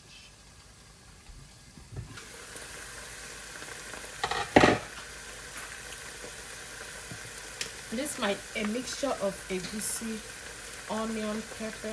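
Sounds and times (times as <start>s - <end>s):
food sizzling in oil: 1.8s - 11.9s.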